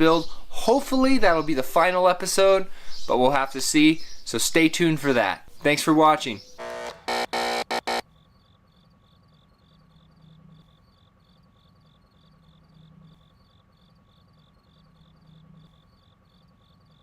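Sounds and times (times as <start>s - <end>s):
cricket chirping: 8.0s - 17.0s.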